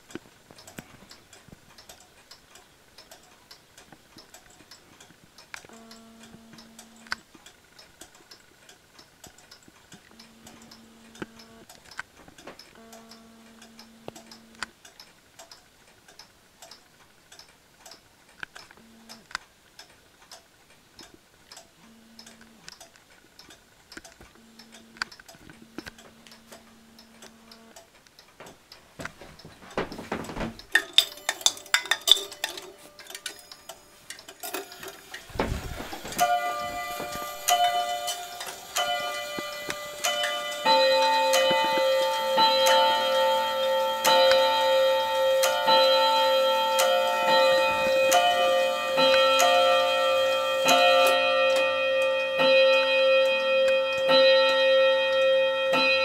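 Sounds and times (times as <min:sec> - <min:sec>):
pendulum clocks ticking: 0:00.0 - 0:56.0
clock strikes: 0:25.6 - 0:56.0
clock bells chiming: 0:30.7 - 0:56.0.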